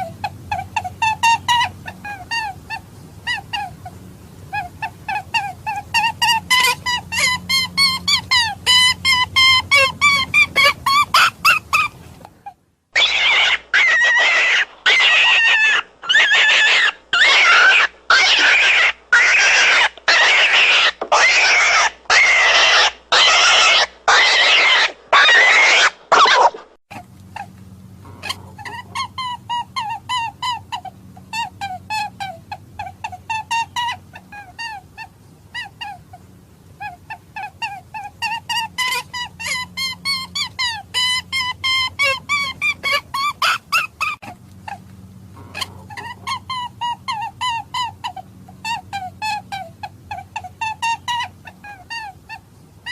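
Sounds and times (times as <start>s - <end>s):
rabbit distress screams: 0.0s - 26.7s, 28.1s - 44.8s, 45.4s - 52.9s.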